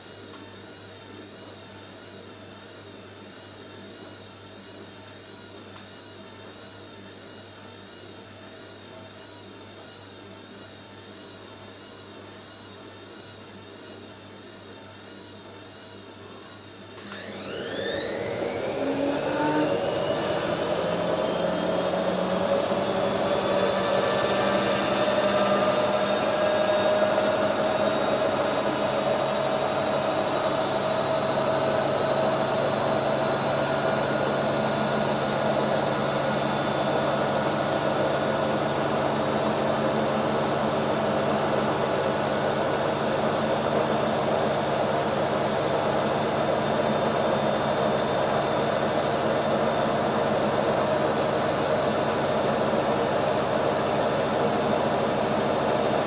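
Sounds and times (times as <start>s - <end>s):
washing machine motor whine: 15.0s - 56.0s.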